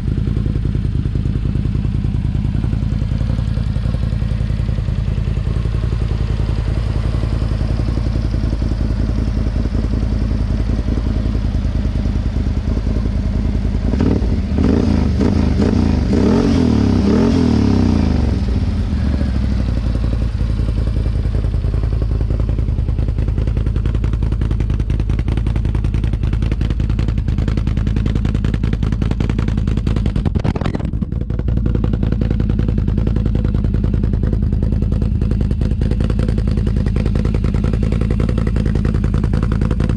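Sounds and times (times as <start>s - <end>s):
engine idling and revving: 0.0s - 39.9s.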